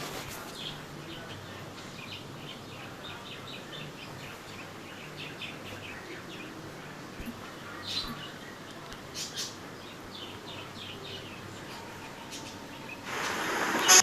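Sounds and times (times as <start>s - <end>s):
birds chirping: 0.0s - 14.0s
faint low hum: 0.0s - 14.0s.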